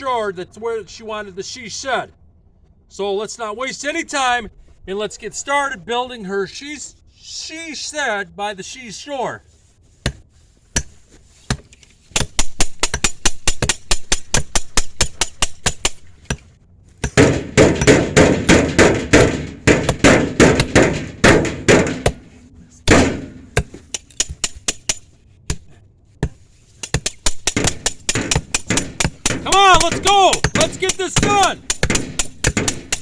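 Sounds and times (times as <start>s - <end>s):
hammer blows: 10.8s - 33.0s.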